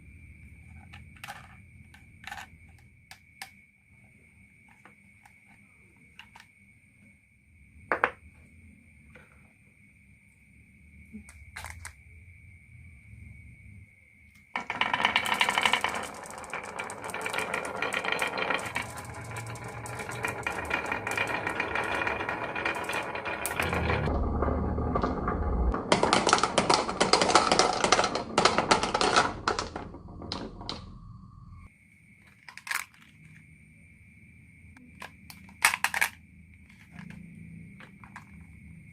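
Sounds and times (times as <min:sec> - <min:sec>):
marbles clattering down a run: 0:02.2 - 0:02.5, 0:14.6 - 0:31.7
deep rumble: 0:16.7 - 0:31.7.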